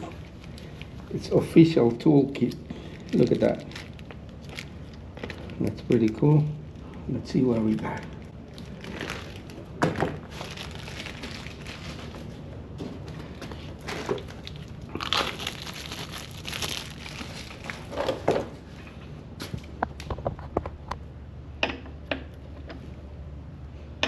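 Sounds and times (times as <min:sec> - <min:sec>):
plastic packaging crinkling: 0:00.0 - 0:18.6.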